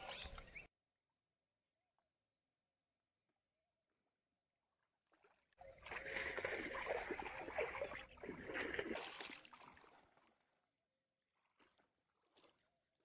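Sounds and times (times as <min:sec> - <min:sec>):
water splashing and sloshing: 0:04.6 - 0:13.0.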